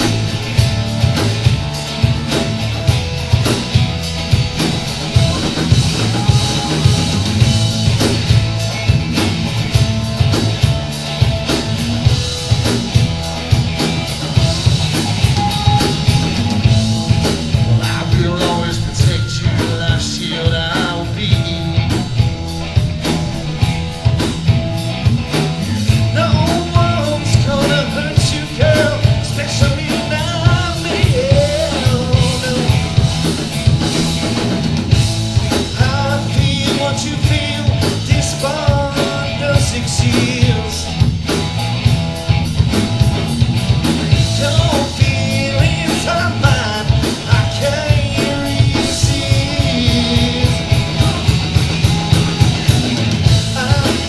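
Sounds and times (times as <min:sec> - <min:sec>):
rock band playing: 0:00.0 - 0:54.0
person singing: 0:15.4 - 0:22.2, 0:25.6 - 0:33.1, 0:44.2 - 0:54.0.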